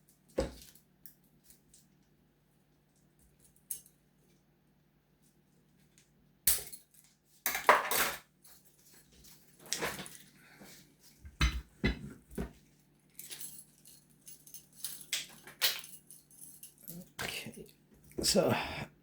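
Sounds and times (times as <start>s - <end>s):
metal keys clinking: 13.1s - 17.2s.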